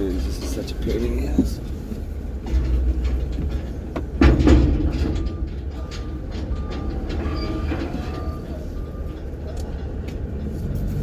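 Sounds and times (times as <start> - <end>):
vehicle engine rumbling: 0.0 - 11.0
loud clunk: 2.4 - 9.2.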